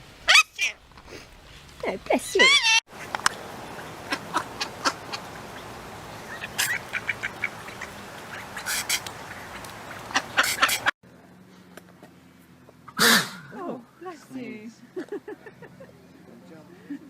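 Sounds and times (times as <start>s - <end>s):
animal sneezing: 8.6s - 9.1s, 10.4s - 10.9s, 13.0s - 13.5s.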